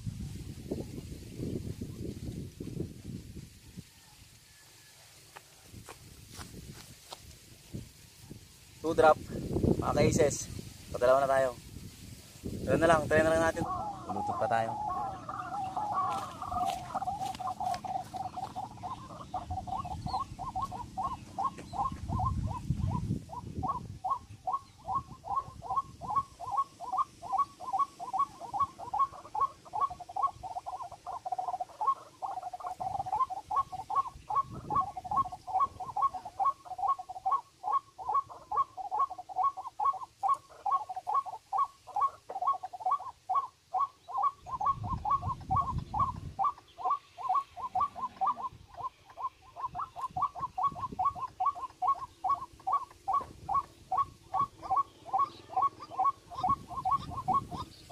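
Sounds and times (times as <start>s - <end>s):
bird calling repeated notes: 12.6s - 57.9s.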